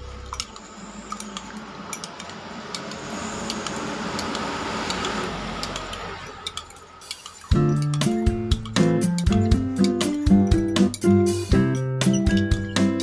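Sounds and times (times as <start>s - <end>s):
kitchenware clinking: 6.5s - 11.3s, 12.0s - 13.0s.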